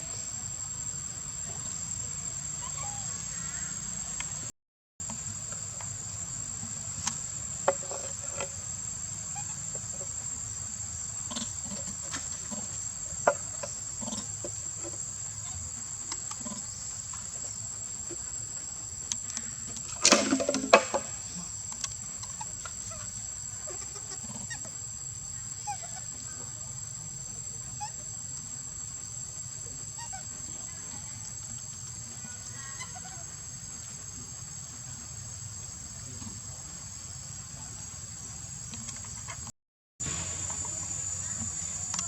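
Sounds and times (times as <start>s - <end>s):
insects chirring: 0.0s - 42.0s
loud clatter of knocks: 20.0s - 21.2s.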